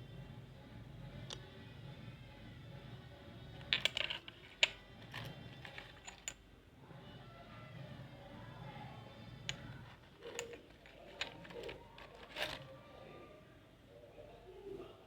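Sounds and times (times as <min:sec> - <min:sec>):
light clicks of objects handled: 0:03.6 - 0:06.4, 0:09.4 - 0:12.8.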